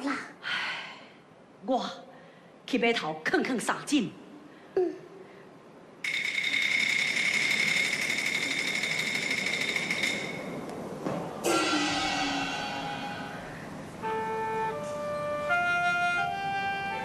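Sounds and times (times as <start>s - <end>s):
fast metallic percussion roll: 6.0s - 10.6s
gong struck: 11.4s - 13.5s.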